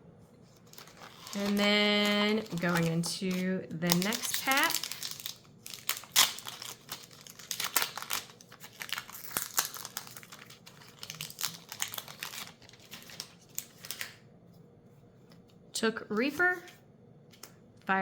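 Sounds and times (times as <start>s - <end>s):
foil wrapper crinkling: 0.5s - 14.2s.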